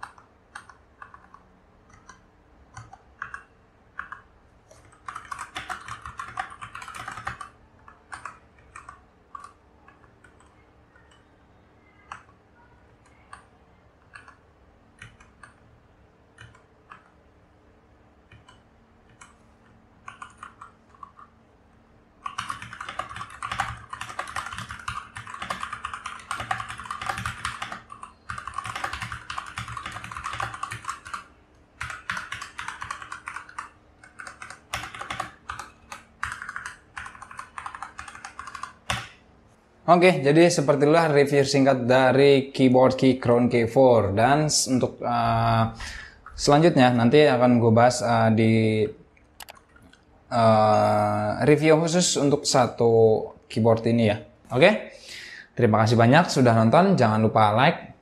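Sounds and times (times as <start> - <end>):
mechanical keyboard typing: 0.0 - 11.3, 11.9 - 12.4, 13.0 - 14.4, 15.0 - 15.6, 16.3 - 17.2, 18.3 - 19.4, 20.0 - 21.3, 22.2 - 39.1.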